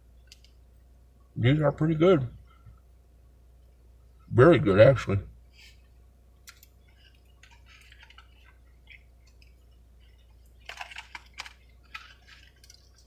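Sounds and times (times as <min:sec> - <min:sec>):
chewing crispy food: 0:06.5 - 0:13.0.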